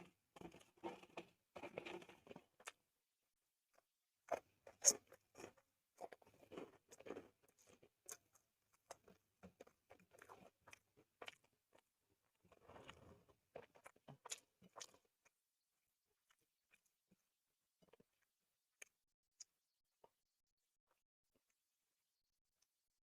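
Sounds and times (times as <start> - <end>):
person chewing and biting food: 4.3 - 11.8, 12.4 - 15.4.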